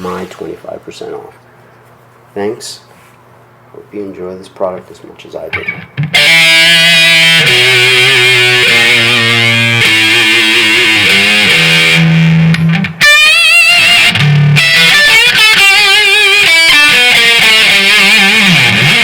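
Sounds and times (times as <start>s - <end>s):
overdriven electric guitar lead: 5.5s - 19.0s.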